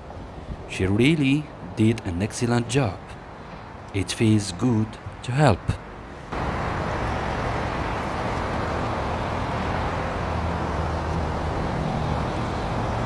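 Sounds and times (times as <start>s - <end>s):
vehicle engine humming: 6.0s - 13.0s.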